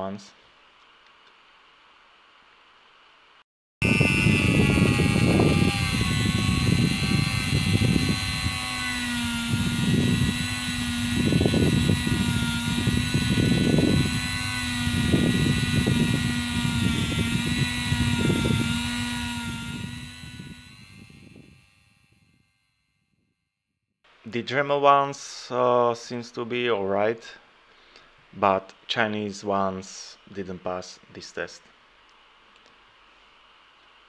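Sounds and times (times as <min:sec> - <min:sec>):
bit grinding and scraping: 0:03.8 - 0:21.8
rotary tool whining: 0:03.8 - 0:22.4.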